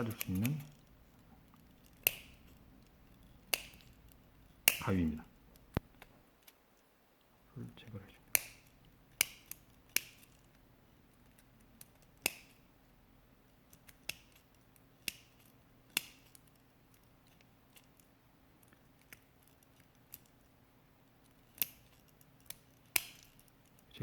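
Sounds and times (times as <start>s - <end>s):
metal snips cutting metal: 2.0s - 2.5s.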